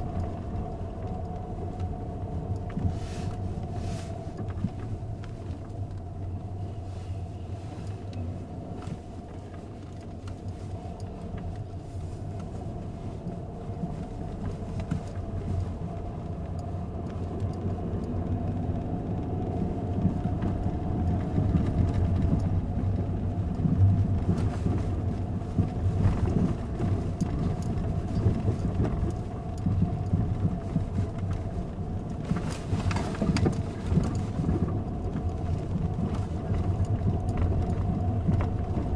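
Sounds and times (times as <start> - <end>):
car interior low rumble: 0.0 - 38.9.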